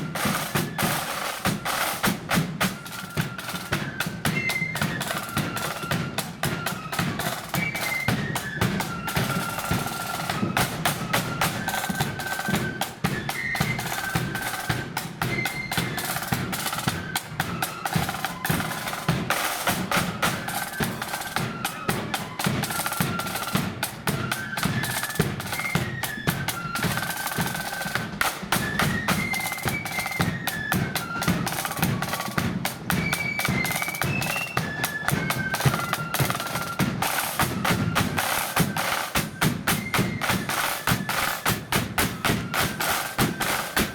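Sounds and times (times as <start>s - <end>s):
flutes playing march melody: 0.0s - 43.9s
snare drum rolls: 0.0s - 43.9s.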